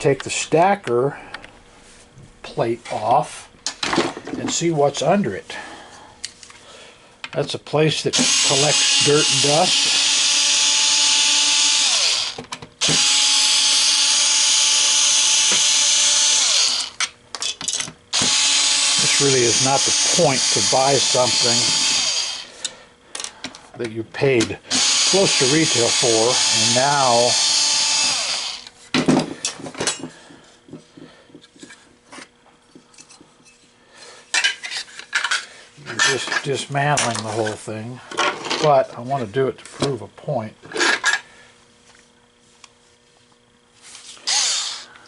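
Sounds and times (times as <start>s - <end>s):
electric drill spinning: 8.1s - 17.1s, 18.1s - 22.7s, 24.7s - 28.8s, 44.1s - 45.0s
power screwdriver whirring: 8.2s - 17.0s, 18.1s - 22.5s, 24.7s - 28.7s, 44.2s - 44.9s.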